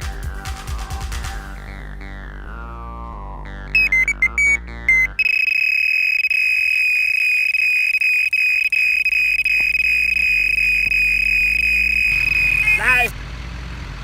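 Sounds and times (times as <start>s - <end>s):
bite alarm beeping: 3.8s - 13.1s.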